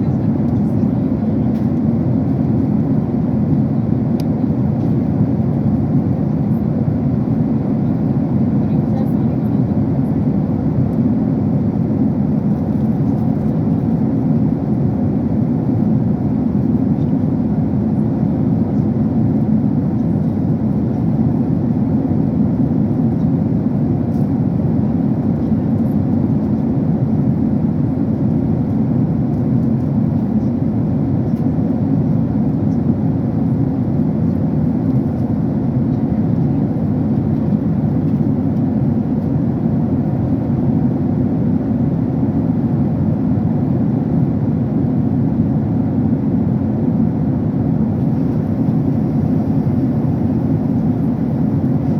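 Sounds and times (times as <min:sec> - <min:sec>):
jet engine cabin rumble: 0:00.0 - 0:51.9.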